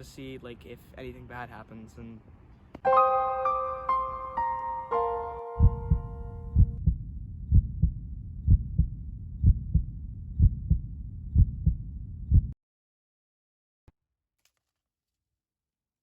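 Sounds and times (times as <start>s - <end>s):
heartbeat thumps: 5.6s - 12.6s.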